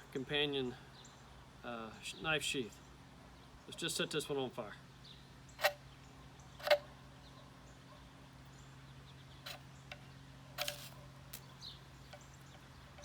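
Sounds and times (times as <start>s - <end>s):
ferro rod scraping: 5.6s - 5.8s, 6.6s - 6.9s, 9.4s - 13.0s.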